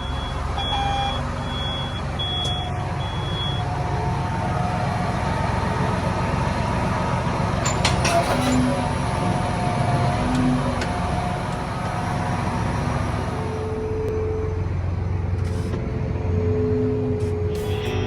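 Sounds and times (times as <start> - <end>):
vehicle engine running: 0.0 - 8.1.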